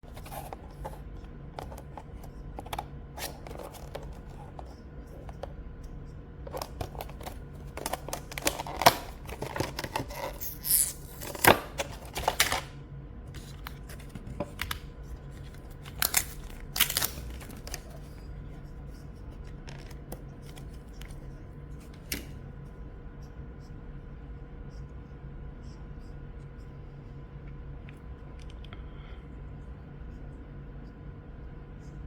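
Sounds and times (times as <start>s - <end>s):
packaging rustling and tearing: 6.5s - 12.8s, 13.4s - 18.1s.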